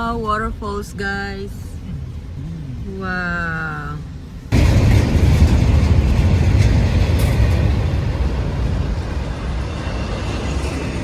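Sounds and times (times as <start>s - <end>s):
wind buffeting microphone: 4.1s - 11.0s.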